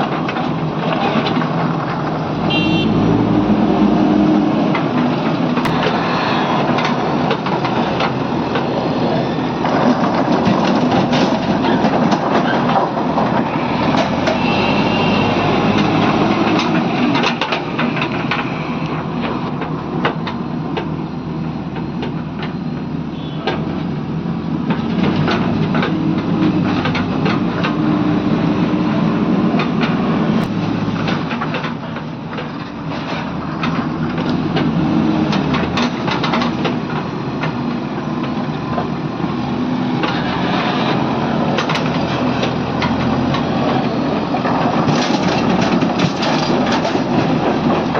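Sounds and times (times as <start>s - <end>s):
diesel engine running: 0.0s - 23.1s.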